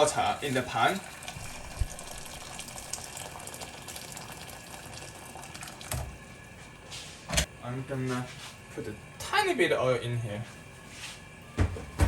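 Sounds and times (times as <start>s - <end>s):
water pouring into a pan: 0.0s - 6.0s.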